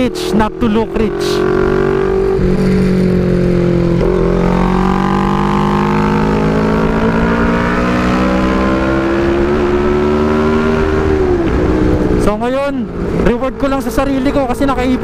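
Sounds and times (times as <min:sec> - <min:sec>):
motorcycle engine running: 0:00.0 - 0:07.6.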